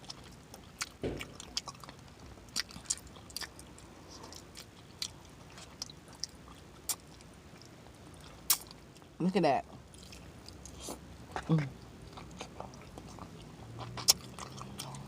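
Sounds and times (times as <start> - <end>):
person chewing and lip smacking: 0.0 - 9.2, 9.9 - 15.0
dull thump: 1.0 - 1.4.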